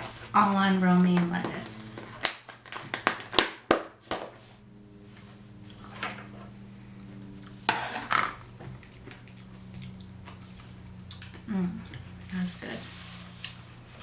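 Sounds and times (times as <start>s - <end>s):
low hum: 4.4s - 14.0s.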